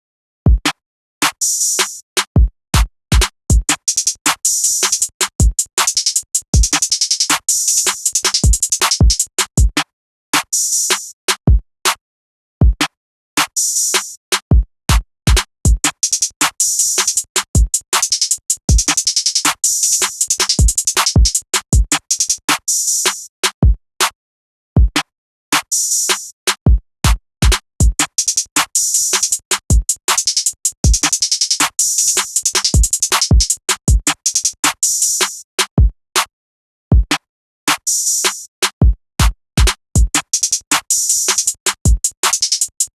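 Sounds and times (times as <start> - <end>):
fast hi-hat rolls: 3.8 - 9.3, 16.0 - 21.4, 28.0 - 35.3, 40.2 - 42.9.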